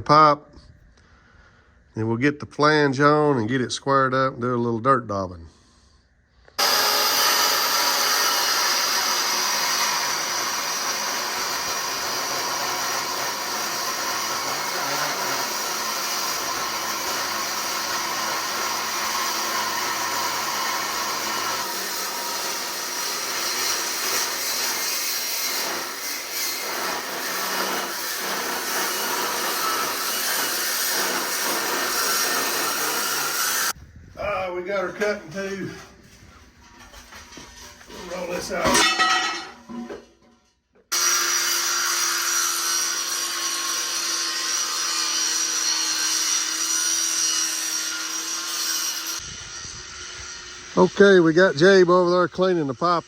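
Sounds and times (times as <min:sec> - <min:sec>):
circular saw cutting steel pipe: 0:06.6 - 0:33.8, 0:40.9 - 0:53.0.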